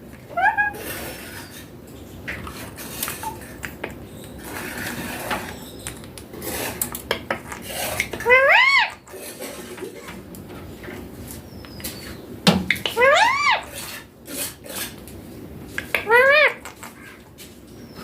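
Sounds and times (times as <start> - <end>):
parakeet calling: 0.3 - 1.7, 8.0 - 9.2, 11.5 - 13.8, 16.0 - 17.2.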